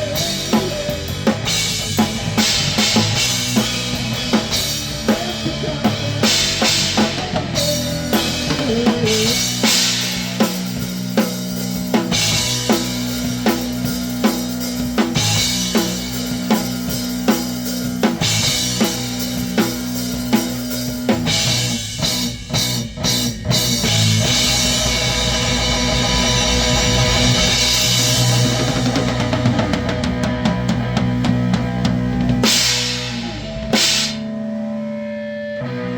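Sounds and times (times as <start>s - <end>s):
drum kit beat: 0.0s - 34.5s
rock band playing: 0.0s - 35.9s
cymbals crashing: 32.4s - 34.3s.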